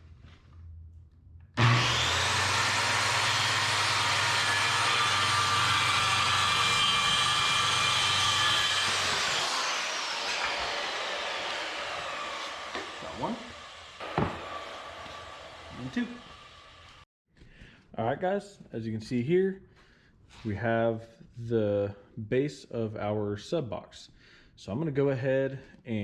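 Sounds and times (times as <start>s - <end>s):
circular saw cutting wood: 1.6s - 17.0s.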